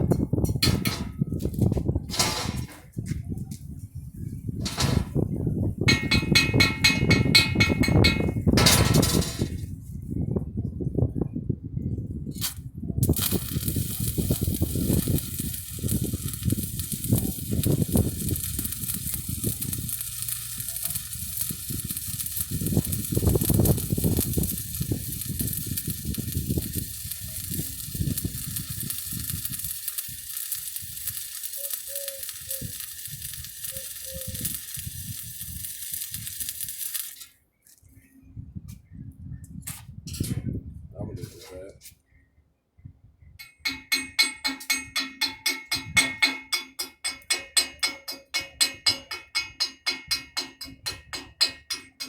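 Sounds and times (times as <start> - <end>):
welding arc crackling: 12.4 - 37.3.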